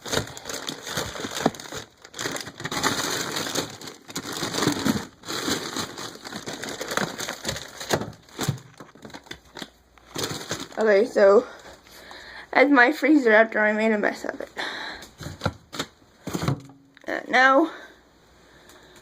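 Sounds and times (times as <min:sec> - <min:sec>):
plastic wrapping crinkling: 0:00.0 - 0:12.0, 0:15.2 - 0:16.8.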